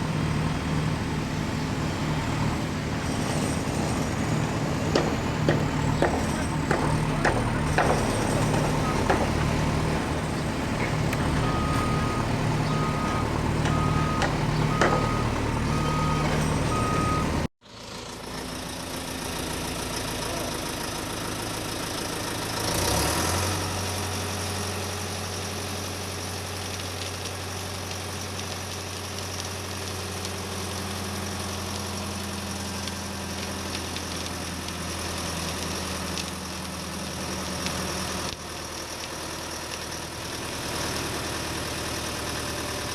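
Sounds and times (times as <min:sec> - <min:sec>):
truck engine humming: 0:00.0 - 0:17.5
engine idling low drone: 0:00.0 - 0:22.5
reversing alarm beeping: 0:05.0 - 0:10.5, 0:11.1 - 0:17.5.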